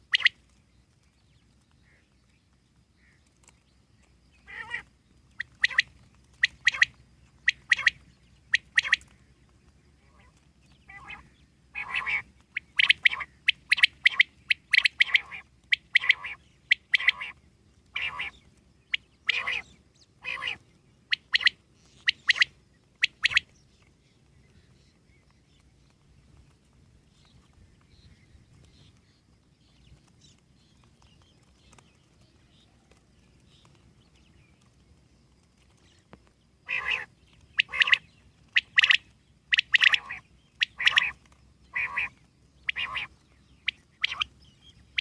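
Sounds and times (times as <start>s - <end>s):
quail calling: 0.0s - 0.4s, 4.4s - 9.1s, 10.0s - 18.4s, 19.0s - 23.5s, 36.6s - 45.0s.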